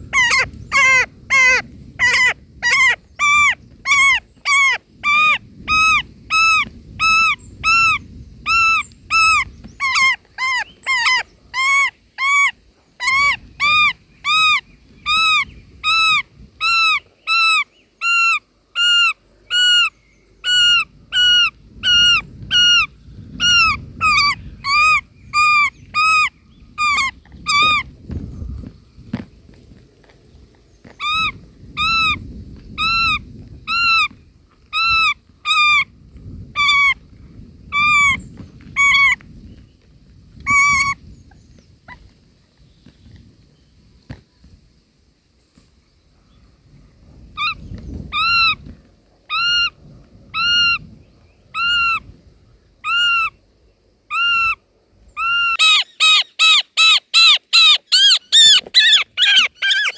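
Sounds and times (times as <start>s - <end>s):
bird calling short notes: 55.2s - 59.9s.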